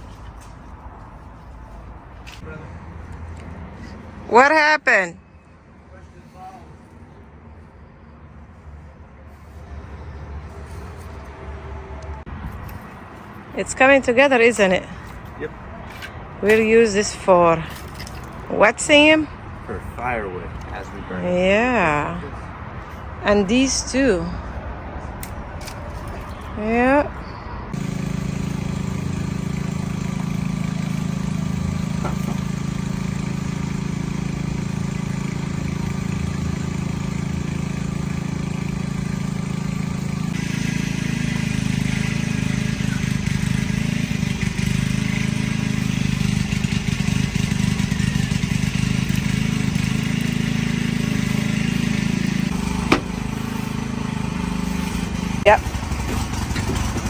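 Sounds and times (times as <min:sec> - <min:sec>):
small engine running: 0:27.7 - 0:57.0.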